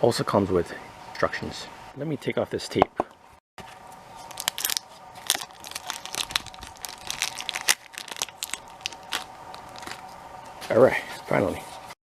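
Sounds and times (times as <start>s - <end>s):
tape peeling off packaging: 4.3s - 10.1s.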